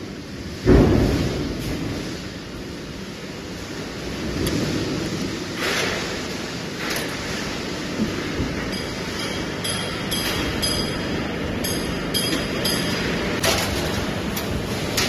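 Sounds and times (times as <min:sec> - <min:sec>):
metal stamping machinery din: 0:05.5 - 0:15.0.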